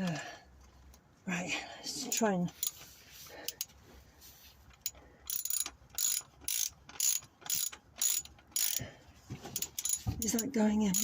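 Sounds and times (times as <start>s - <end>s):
ratchet wrench clicking: 4.7s - 8.8s, 9.6s - 11.0s.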